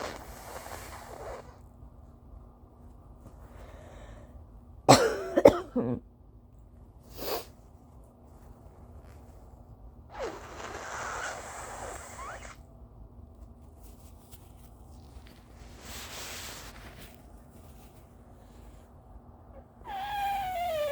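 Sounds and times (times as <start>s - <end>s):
woman coughing: 4.9s - 6.0s
breathy blowing: 10.1s - 12.6s, 19.6s - 20.9s.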